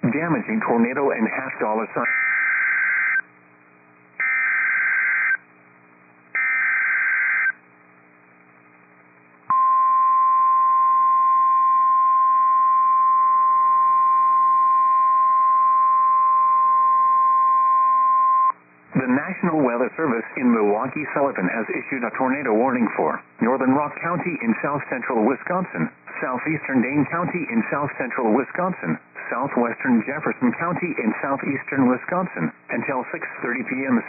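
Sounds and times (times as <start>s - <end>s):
steady warning alarm tone: 4.2s - 5.4s, 6.4s - 7.6s.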